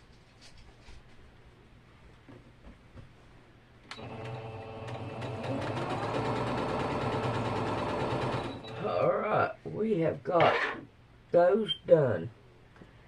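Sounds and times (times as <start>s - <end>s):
sewing machine running: 4.0s - 8.8s.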